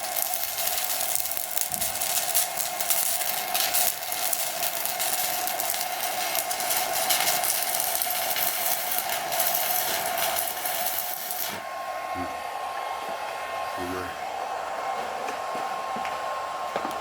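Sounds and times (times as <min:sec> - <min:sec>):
welding arc hissing and crackling: 0:00.0 - 0:11.7
welding machine whine: 0:00.0 - 0:12.3.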